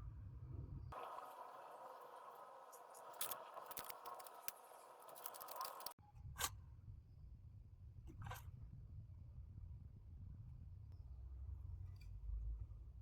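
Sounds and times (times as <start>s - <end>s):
clicks and scrapes of small objects: 1.0s - 6.5s.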